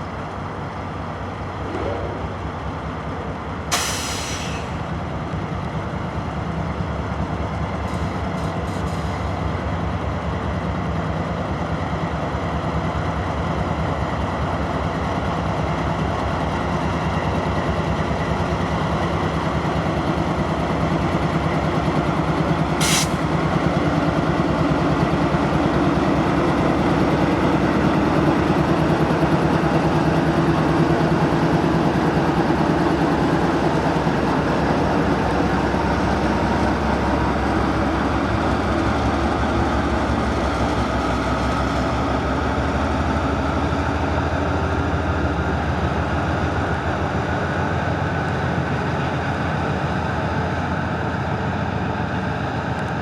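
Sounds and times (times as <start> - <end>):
diesel locomotive running: 0.0 - 53.0
short sharp air hisses: 3.7 - 4.8, 22.8 - 23.3.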